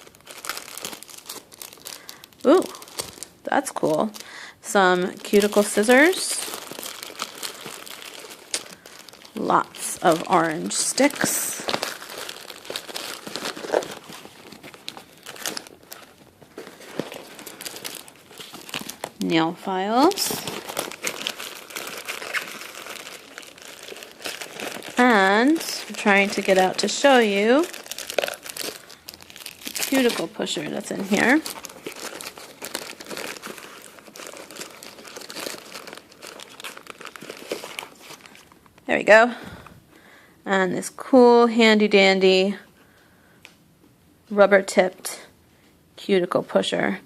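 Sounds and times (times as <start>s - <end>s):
packaging crinkling: 0.0s - 38.8s.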